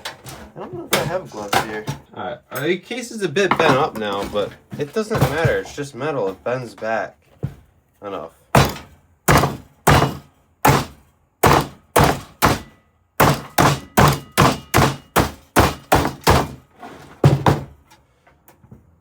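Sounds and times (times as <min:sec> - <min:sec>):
hammering on metal case: 0:08.6 - 0:16.6.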